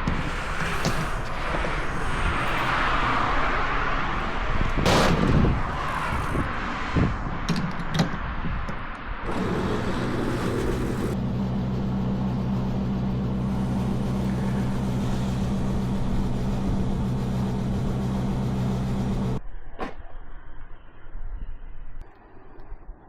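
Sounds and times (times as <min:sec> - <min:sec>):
loud exhaust bang: 0:04.4 - 0:06.0
exhaust pops and crackles: 0:04.4 - 0:06.4
car engine pulling under load: 0:09.3 - 0:19.4.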